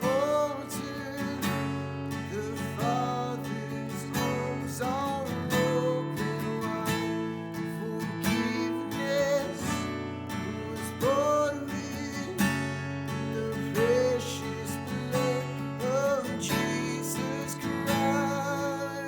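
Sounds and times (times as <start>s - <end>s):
strummed acoustic guitar: 0.0s - 19.0s.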